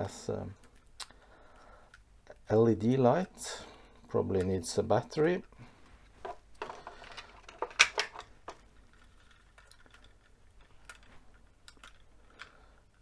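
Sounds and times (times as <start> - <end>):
plastic clicks and light rattling: 4.3 - 13.0.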